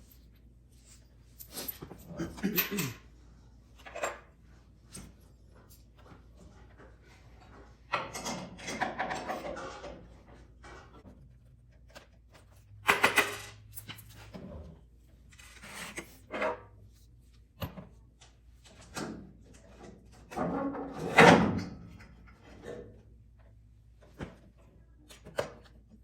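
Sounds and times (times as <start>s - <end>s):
handling rustling and scraping: 0.0s - 2.1s, 3.6s - 18.8s.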